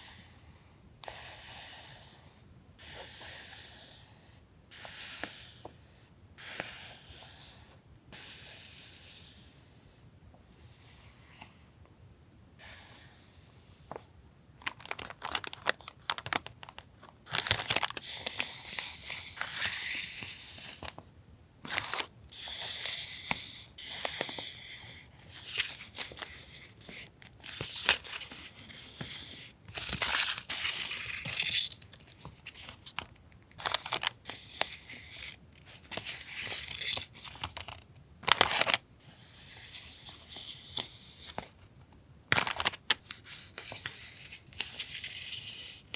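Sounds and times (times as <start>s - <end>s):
packaging crinkling and rustling: 14.6s - 19.7s, 21.7s - 22.1s, 27.0s - 28.7s, 29.7s - 38.8s, 42.3s - 45.2s.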